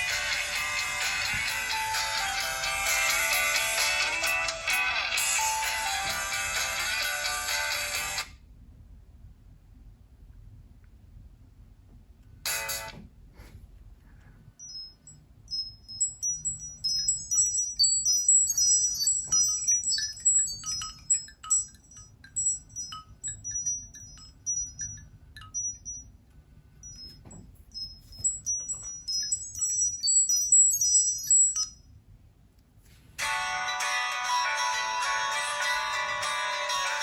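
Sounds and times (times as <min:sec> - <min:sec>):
phone ringtone tinkling chimes: 0:00.0 - 0:08.2, 0:14.6 - 0:31.9, 0:33.2 - 0:37.0.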